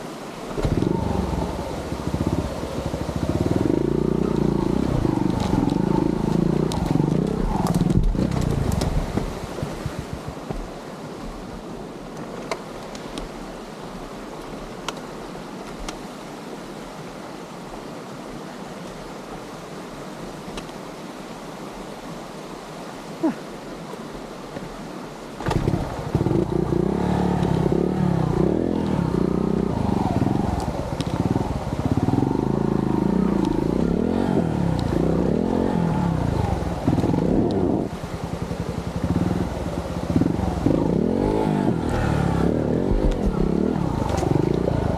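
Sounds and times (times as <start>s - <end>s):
motorcycle engine: 0.6s - 8.8s, 25.4s - 44.9s.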